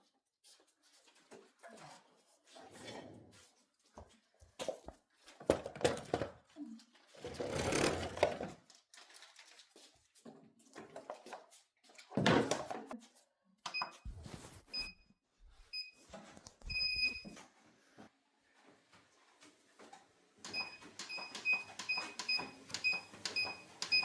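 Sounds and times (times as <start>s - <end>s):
treadmill console beeping: 16.6s - 17.3s, 20.4s - 24.0s.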